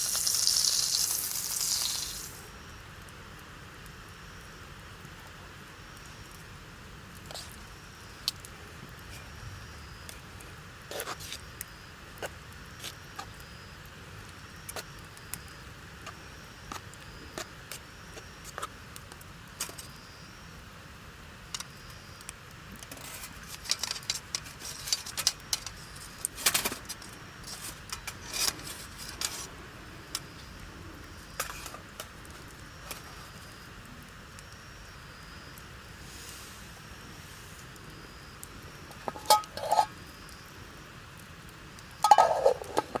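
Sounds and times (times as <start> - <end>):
campfire crackling and popping: 0.0 - 20.0, 21.4 - 43.0
low steady fire hiss: 0.0 - 43.0.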